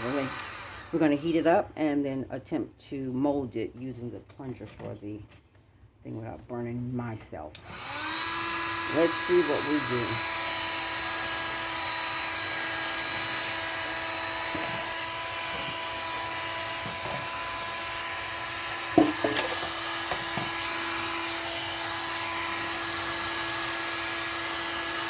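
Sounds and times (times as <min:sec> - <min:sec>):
heat gun fan whine: 0:00.0 - 0:01.5, 0:07.5 - 0:25.0
knock: 0:19.0 - 0:20.6.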